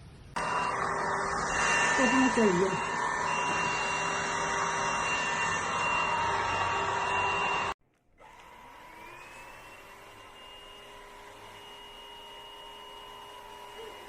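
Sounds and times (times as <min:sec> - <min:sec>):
vacuum cleaner whirring whine: 0:00.4 - 0:14.0.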